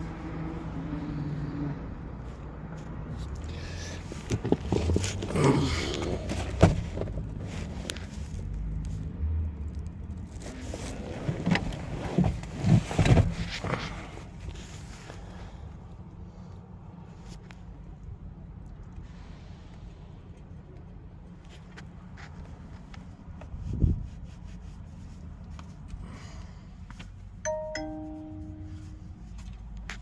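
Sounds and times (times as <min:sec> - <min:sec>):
low steady hum: 0:26.5 - 0:29.9.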